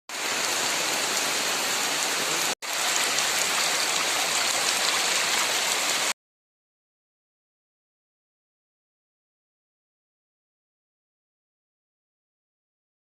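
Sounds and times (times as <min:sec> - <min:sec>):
stream water rushing: 0:00.1 - 0:06.1.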